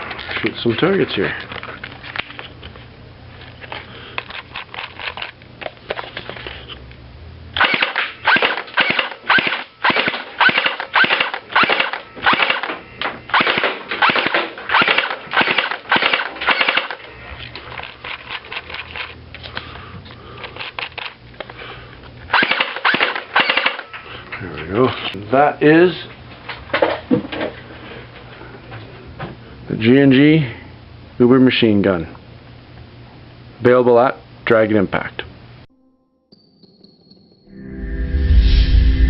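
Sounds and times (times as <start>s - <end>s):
airsoft gun firing shots: 7.6s - 17.0s, 22.3s - 23.9s.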